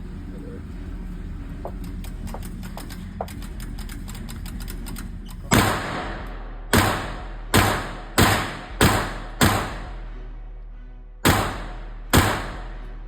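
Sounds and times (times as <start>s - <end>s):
pistol shots with echo: 5.5s - 9.9s, 11.2s - 12.8s.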